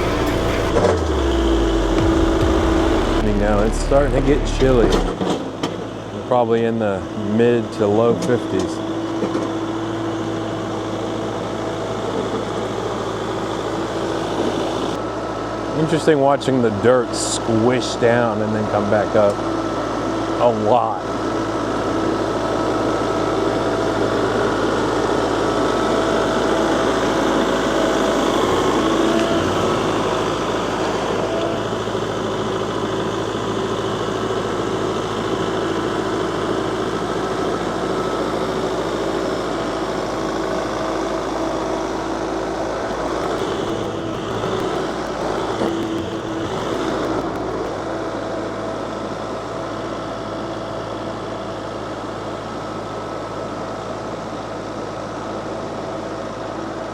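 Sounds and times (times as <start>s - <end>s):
tractor diesel engine with whine: 0.0s - 56.9s
knocks and rattles: 42.8s - 47.9s.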